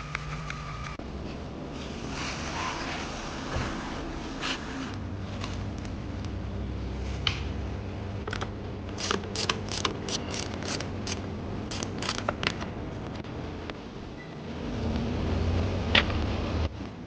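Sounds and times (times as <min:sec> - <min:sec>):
sharp mechanical clicks: 0:08.3 - 0:12.5.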